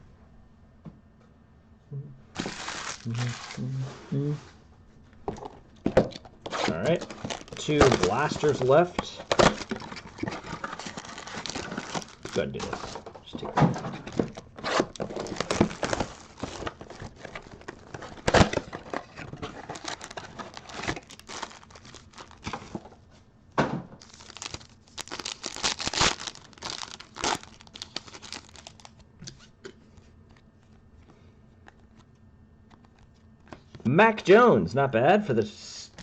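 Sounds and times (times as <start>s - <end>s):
plastic wrapping tearing and crinkling: 2.4s - 3.7s, 6.4s - 13.1s, 13.8s - 22.9s, 24.0s - 29.0s.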